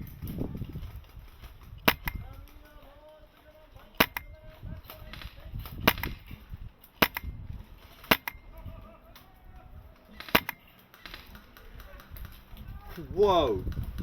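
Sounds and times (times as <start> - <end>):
airsoft rifle shots: 1.3 - 12.8.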